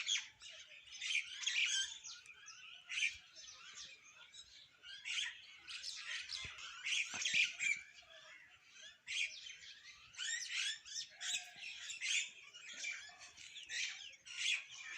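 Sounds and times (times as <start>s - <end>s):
flock of small birds chirping: 0.0s - 14.9s.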